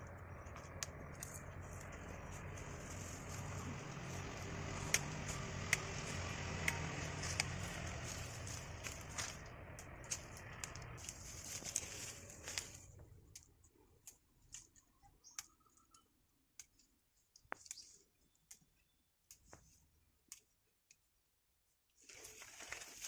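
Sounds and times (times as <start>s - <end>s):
small rustles: 10.1s - 13.5s, 21.9s - 23.0s.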